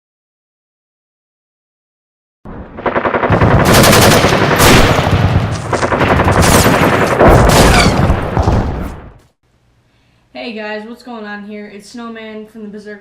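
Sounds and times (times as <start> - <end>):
rapid automatic gunfire: 2.8 - 8.8.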